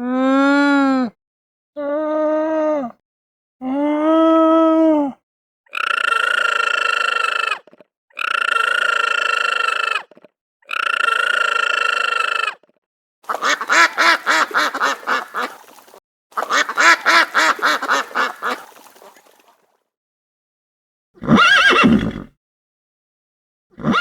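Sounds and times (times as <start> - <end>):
held animal call: 5.7 - 12.7
duck quacking rapidly: 13.3 - 19.2
horse whinny: 21.2 - 22.3, 23.8 - 24.0.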